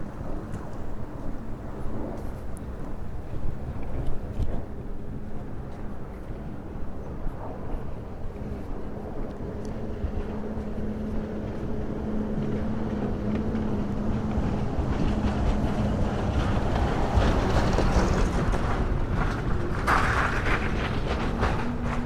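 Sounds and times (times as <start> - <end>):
wind noise on microphone: 0.0 - 22.0
rumbling background: 6.2 - 22.0
low engine drone: 6.4 - 22.0.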